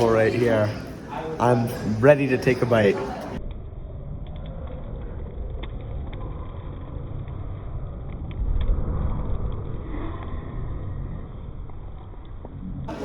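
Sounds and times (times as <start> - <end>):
low steady rumble: 3.4 - 12.9.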